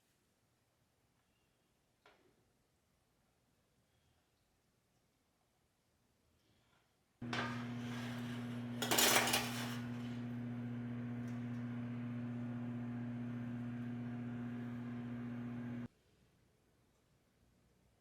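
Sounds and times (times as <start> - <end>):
kitchen appliance humming: 7.2 - 15.9
clatter of dishes: 7.3 - 9.9.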